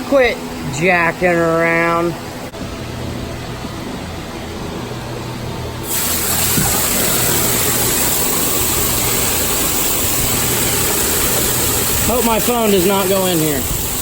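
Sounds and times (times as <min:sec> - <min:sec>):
water gushing into tank: 0:05.8 - 0:14.0.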